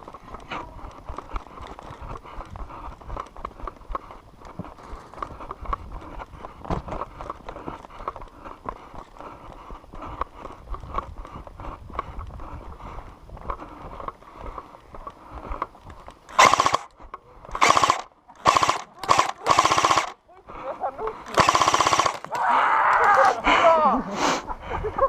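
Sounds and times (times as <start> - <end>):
shuffling of gear: 0.0 - 11.6
footsteps: 0.0 - 22.4
airsoft gun firing full auto: 16.3 - 16.9, 17.5 - 20.2, 21.3 - 22.3.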